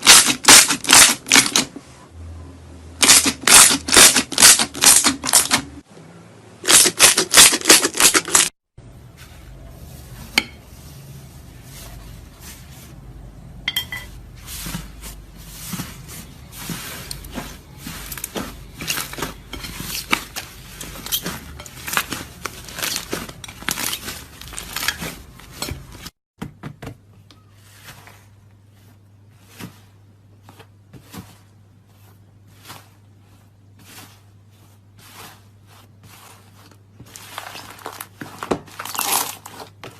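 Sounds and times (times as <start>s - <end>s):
crunchy slime crackling: 14.5s - 25.3s, 35.0s - 39.9s.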